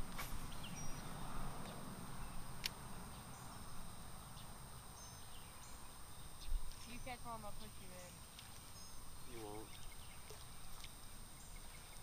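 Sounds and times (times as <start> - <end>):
steady low rumble: 0.0 - 8.2.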